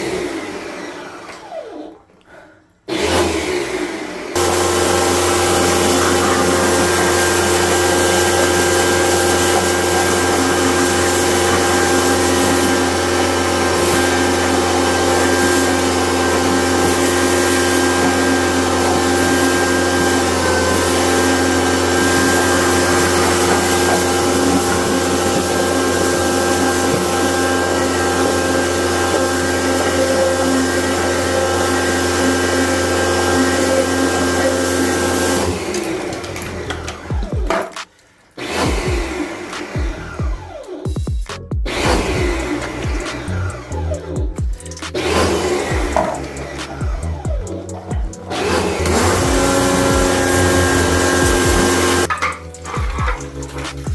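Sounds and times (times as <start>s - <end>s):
electric machine humming and whining: 2.9s - 37.7s, 41.7s - 53.9s.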